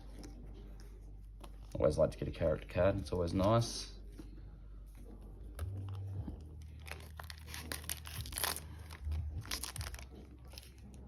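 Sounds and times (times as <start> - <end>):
wrapper crinkling and tearing: 6.6 - 11.0.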